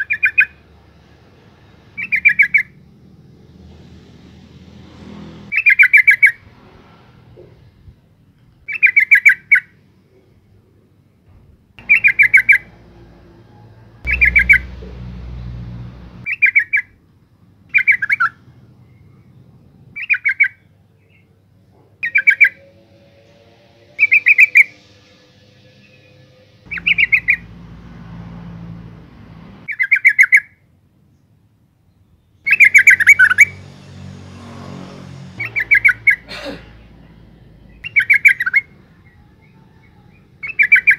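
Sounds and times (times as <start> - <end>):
bird chattering calls: 11.8 - 12.7, 14.1 - 14.7, 26.7 - 27.5, 32.5 - 33.5, 35.4 - 36.3.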